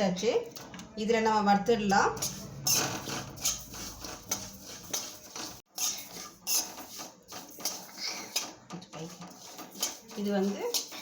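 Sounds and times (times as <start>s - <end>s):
utensil scraping and knocking pan: 2.1s - 11.0s
seeds dry-roasting in a pan: 2.2s - 11.0s.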